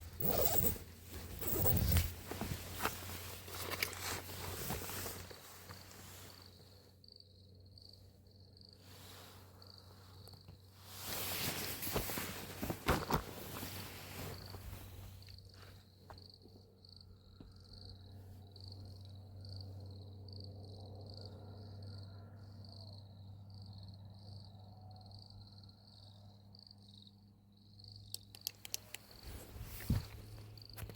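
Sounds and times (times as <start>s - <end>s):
insect chirping: 0.2s - 30.9s
sharp clicks: 28.1s - 29.2s.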